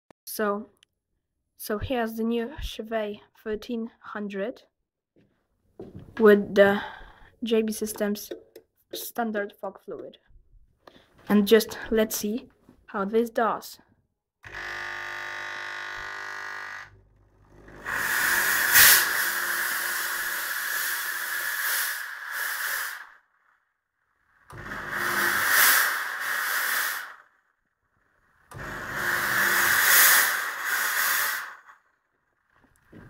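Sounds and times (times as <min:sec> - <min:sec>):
fog machine buzz: 0:14.5 - 0:23.2, 0:24.3 - 0:27.3, 0:28.2 - 0:31.8
fog blasting in hissing bursts: 0:17.8 - 0:23.3, 0:24.5 - 0:27.3, 0:28.6 - 0:31.8.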